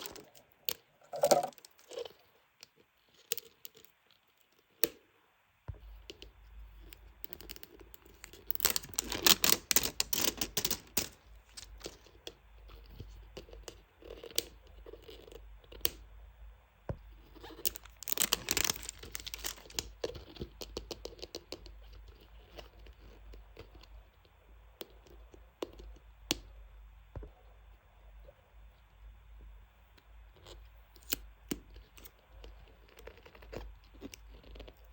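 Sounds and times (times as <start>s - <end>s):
packaging crinkling and tearing: 7.3s - 12.1s, 17.4s - 21.2s.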